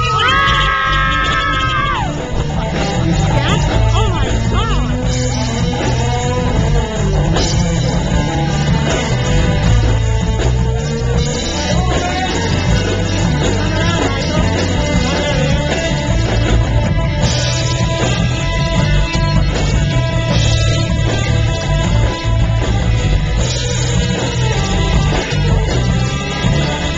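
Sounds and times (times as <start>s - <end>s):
loud rock music with singing: 0.0s - 26.9s.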